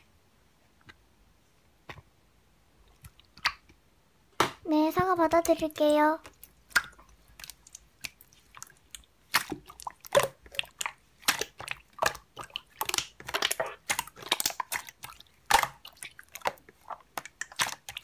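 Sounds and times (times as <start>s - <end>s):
slime squeezed by hand: 6.3s - 18.0s.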